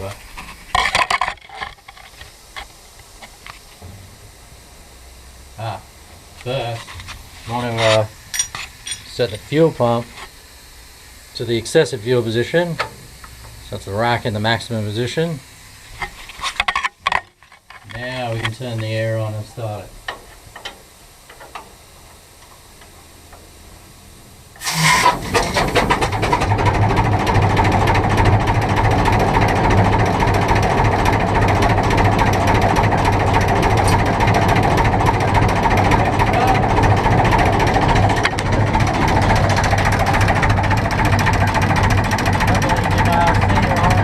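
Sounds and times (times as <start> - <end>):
compressed air blast: 24.6 - 26.4
diesel engine running loudly: 24.6 - 44.0.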